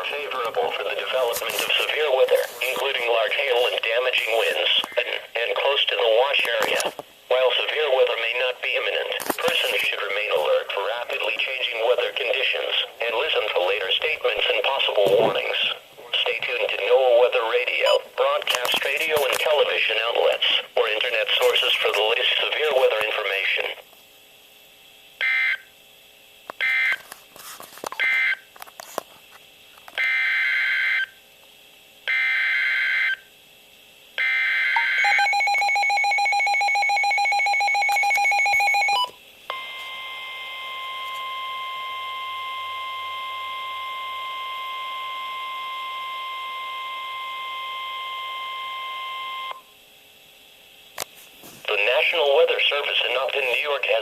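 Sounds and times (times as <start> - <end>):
steady warning alarm tone: 25.2 - 25.7, 26.6 - 27.0, 30.0 - 31.2, 32.1 - 33.3, 34.2 - 49.7.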